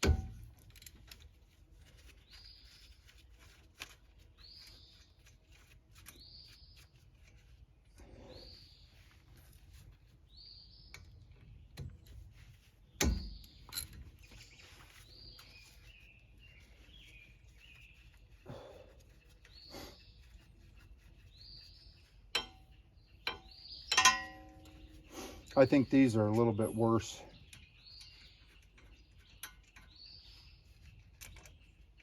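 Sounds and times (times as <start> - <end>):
songbirds chirping: 0.0 - 32.0
metallic clatter with ring: 13.5 - 14.5, 22.3 - 25.0.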